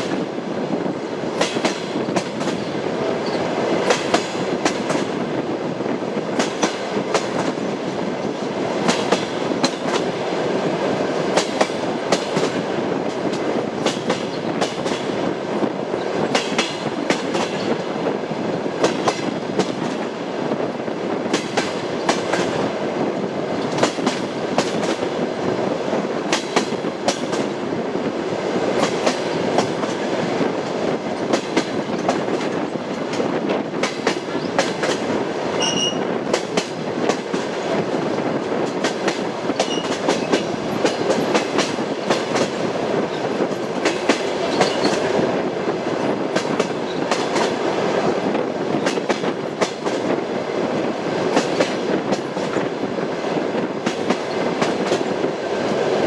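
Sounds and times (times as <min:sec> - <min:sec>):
railway carriages rumbling: 0:00.0 - 0:56.0
train wheels clattering: 0:01.3 - 0:05.2, 0:06.2 - 0:18.0, 0:18.7 - 0:20.2, 0:21.2 - 0:22.8, 0:23.6 - 0:27.6, 0:28.5 - 0:55.9
high wheel squeal: 0:35.6 - 0:36.0.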